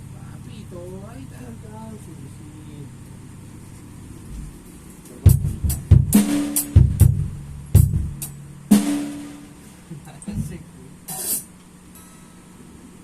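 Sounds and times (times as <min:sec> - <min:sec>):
drum kit beat: 0:05.2 - 0:11.5.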